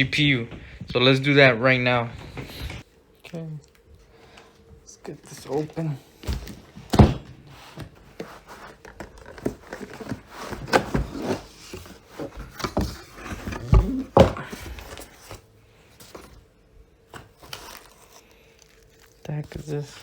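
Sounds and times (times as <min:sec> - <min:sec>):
packaging being opened and handled: 0:07.6 - 0:15.4, 0:17.1 - 0:20.0.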